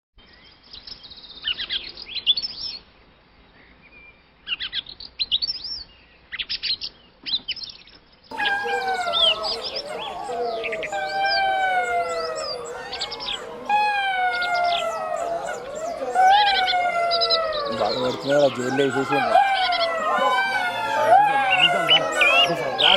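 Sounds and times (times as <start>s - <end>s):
birds chirping in rapid trills: 8.3s - 22.9s
wolves howling: 8.3s - 22.9s.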